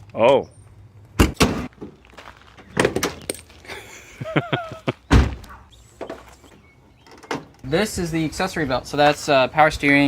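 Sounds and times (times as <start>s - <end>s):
knocks and thuds: 5.1s - 5.4s.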